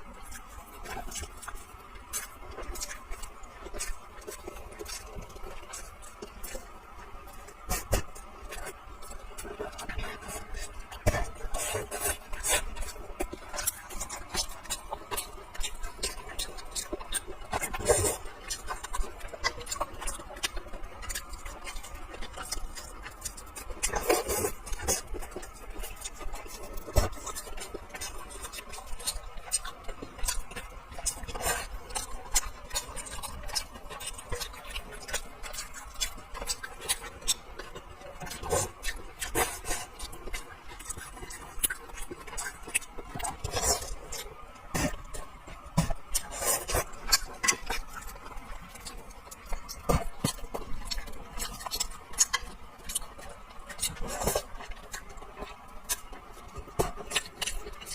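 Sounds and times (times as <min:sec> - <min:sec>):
eating smacks: 0:00.2 - 0:57.9.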